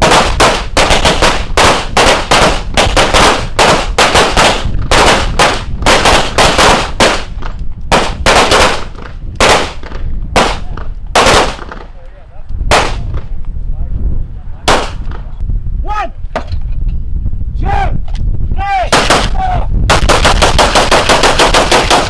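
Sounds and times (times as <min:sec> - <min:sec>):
pistol shots: 0:00.0 - 0:11.8, 0:14.7 - 0:15.0, 0:18.9 - 0:19.3, 0:19.9 - 0:22.0.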